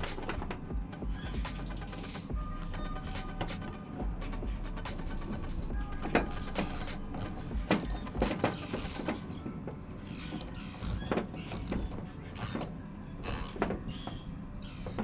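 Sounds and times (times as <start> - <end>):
metal clicks of hand tools: 6.0 - 9.4, 10.0 - 14.2.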